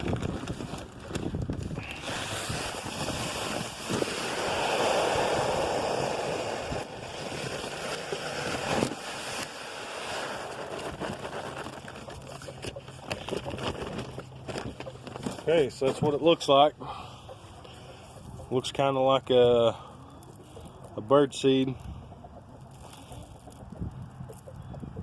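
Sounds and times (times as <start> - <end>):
chicken feed pouring: 0.0 - 15.5.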